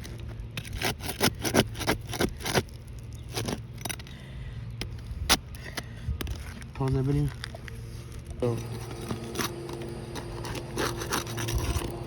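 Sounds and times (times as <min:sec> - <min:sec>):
hand tool scraping roof shingles: 0:00.0 - 0:04.2, 0:08.4 - 0:12.0.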